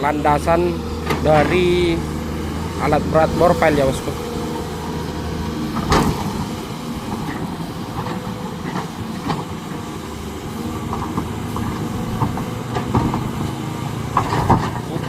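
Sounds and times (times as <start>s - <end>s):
diesel engine rumbling: 0.0s - 15.0s
knocks and clanks: 0.9s - 2.1s, 5.7s - 9.9s, 10.8s - 15.0s.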